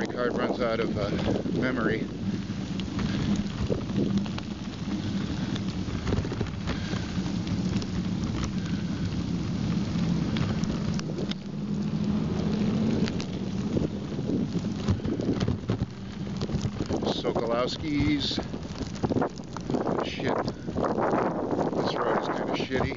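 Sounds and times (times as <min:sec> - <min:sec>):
bike tyres rolling on snow: 0:00.0 - 0:22.9
small clicks and rattles: 0:00.0 - 0:22.9
wind rumbling on microphone: 0:00.0 - 0:22.9.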